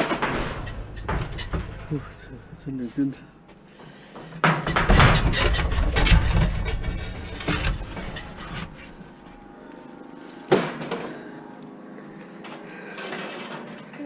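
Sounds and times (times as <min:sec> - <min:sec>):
metal clank: 0:00.0 - 0:02.6, 0:04.4 - 0:09.0
scrap metal clattering: 0:00.0 - 0:03.0, 0:03.7 - 0:09.4
heavy low rumble: 0:00.2 - 0:03.4.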